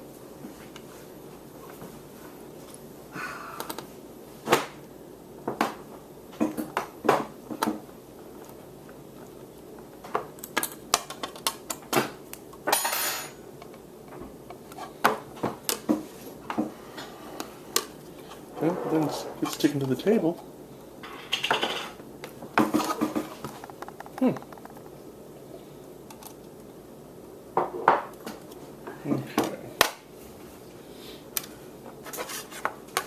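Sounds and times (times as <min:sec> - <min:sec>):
scraping on tabletop: 0:18.2 - 0:19.8
plastic clicks and knocks: 0:22.6 - 0:25.0.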